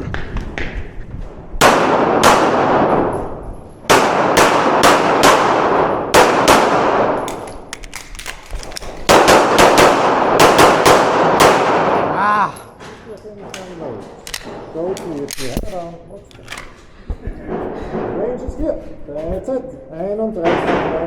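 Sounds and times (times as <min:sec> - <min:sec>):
handgun shots echoing: 0:01.6 - 0:03.3, 0:03.9 - 0:12.2, 0:13.5 - 0:16.8.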